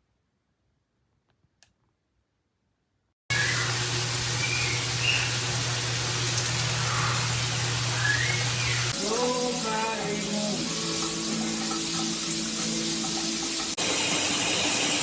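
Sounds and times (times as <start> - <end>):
shower spraying water: 3.3 - 15.0.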